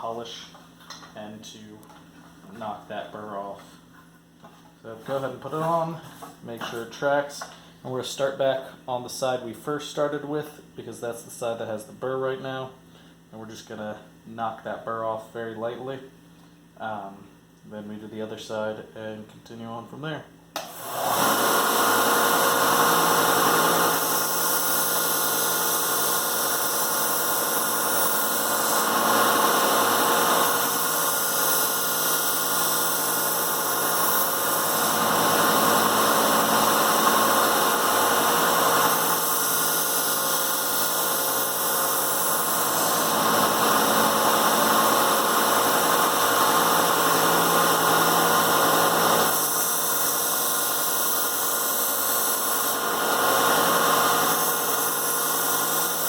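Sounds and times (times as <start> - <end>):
belt sander running: 20.6 - 56.0
knife grinding on sander belt: 21.0 - 56.0.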